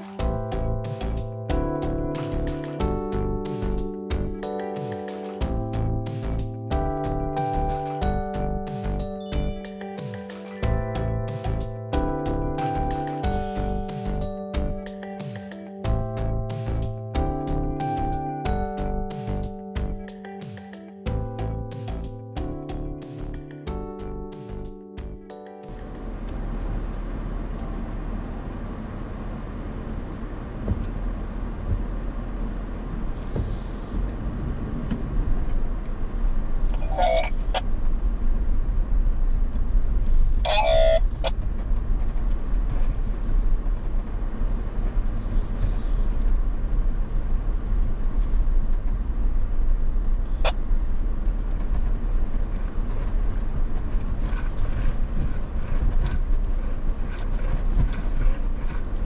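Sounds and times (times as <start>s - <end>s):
vehicle driving low rumble: 10.6s - 14.8s.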